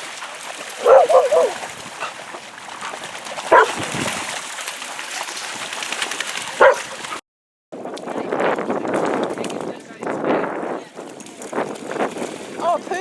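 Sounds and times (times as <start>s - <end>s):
dog barking: 0.8s - 1.6s, 3.5s - 3.8s, 6.6s - 6.9s.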